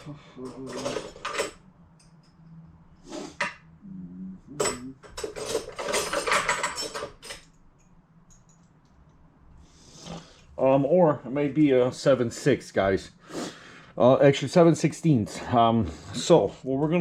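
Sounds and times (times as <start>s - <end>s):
metal hand tools clattering: 0.5s - 1.6s, 4.6s - 7.5s.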